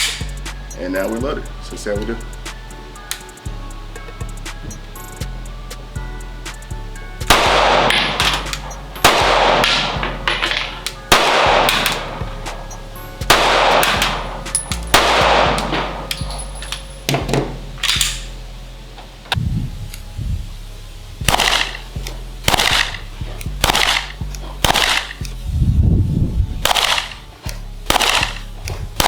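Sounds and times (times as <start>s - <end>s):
pistol shots: 7.2s - 18.3s, 21.2s - 23.0s, 23.6s - 25.3s, 26.6s - 27.2s, 27.9s - 28.5s
fainter gunshots: 7.3s - 16.4s, 21.2s - 23.0s, 23.6s - 25.2s, 26.6s - 27.2s, 27.9s - 28.4s.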